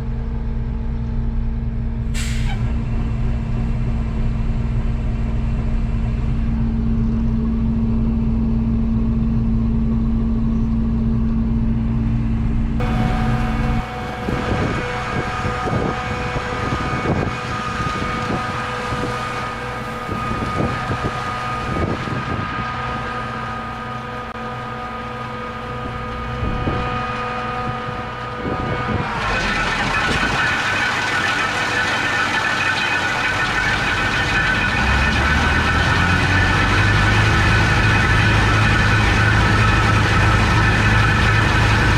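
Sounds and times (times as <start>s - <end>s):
combine harvester running: 0.0s - 41.9s.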